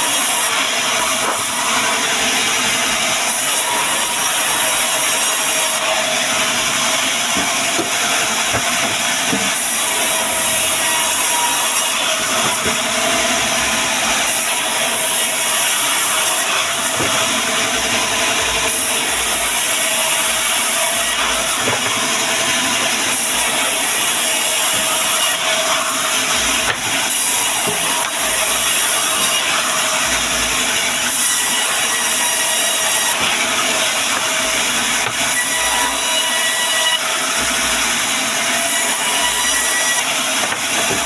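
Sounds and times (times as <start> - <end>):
band saw cutting timber: 0.0 - 41.0.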